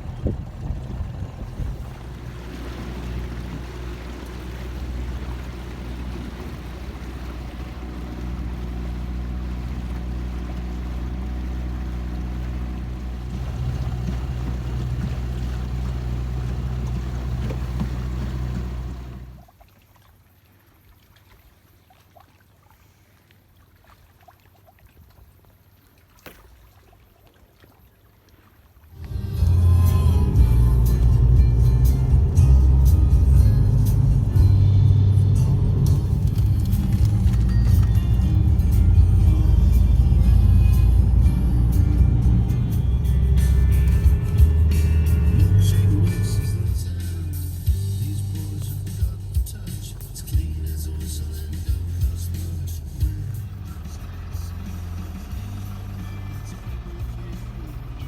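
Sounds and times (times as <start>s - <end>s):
boat engine humming: 0.0s - 19.6s, 28.2s - 58.0s
water noise: 0.0s - 58.0s
wind: 0.0s - 58.0s
music: 29.0s - 58.0s.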